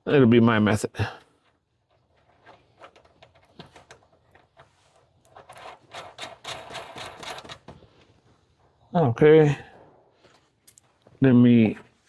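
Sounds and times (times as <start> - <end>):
small metal clicks and rattles: 1.5 - 8.0.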